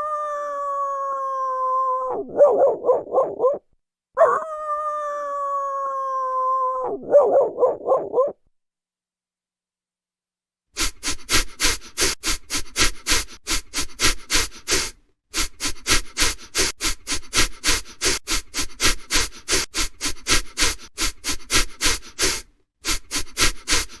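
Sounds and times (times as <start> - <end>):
dog huffing rapidly: 10.8 - 24.0.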